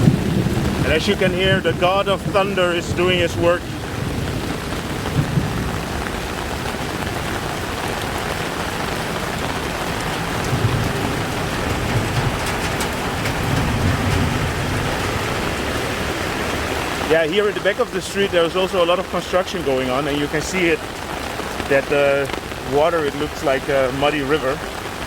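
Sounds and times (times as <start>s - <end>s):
rolling thunder: 0.0s - 19.2s
heavy rain pouring: 0.0s - 25.0s.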